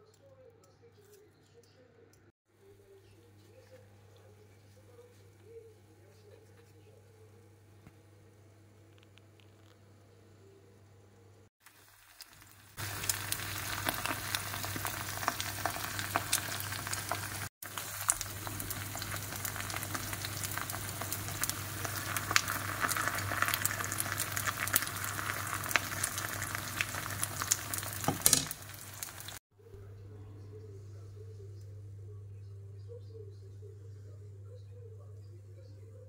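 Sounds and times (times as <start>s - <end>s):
food sizzling in hot oil: 11.6s - 29.4s.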